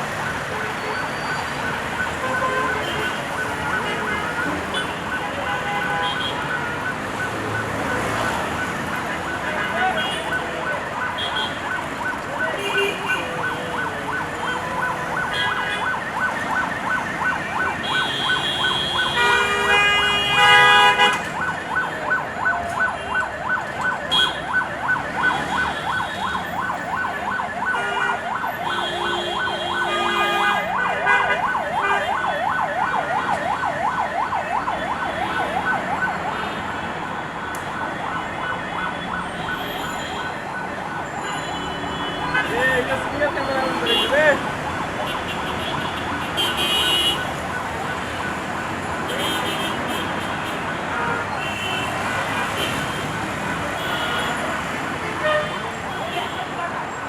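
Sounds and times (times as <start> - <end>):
vehicle horns honking: 17.8 - 21.3, 27.8 - 32.2, 41.2 - 44.4, 45.0 - 47.3, 49.1 - 56.5.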